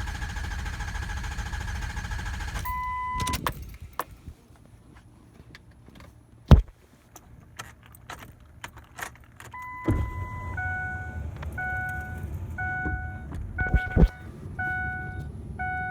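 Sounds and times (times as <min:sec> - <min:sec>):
dashboard warning chime: 0:02.6 - 0:03.4, 0:09.6 - 0:15.9
sharp thumps: 0:06.5 - 0:06.8, 0:12.7 - 0:15.2
steady beep: 0:09.6 - 0:15.9.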